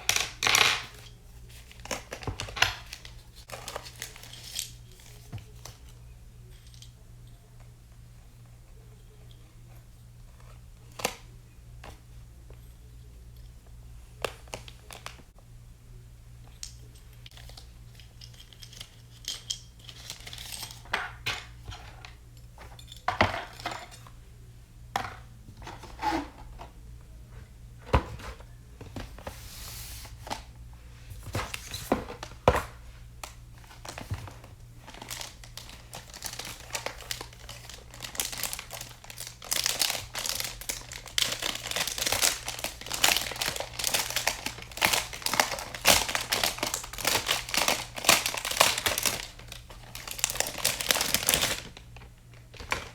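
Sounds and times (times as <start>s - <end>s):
faint low hum: 0.0s - 52.9s
wrapping crinkling and tearing: 0.1s - 5.8s, 17.3s - 20.8s, 33.2s - 52.9s.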